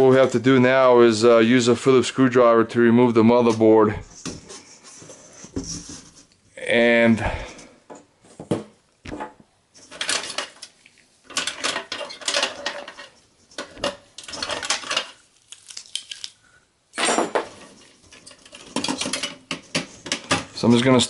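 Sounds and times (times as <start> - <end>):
metallic clicks and rattles: 11.3 - 15.2.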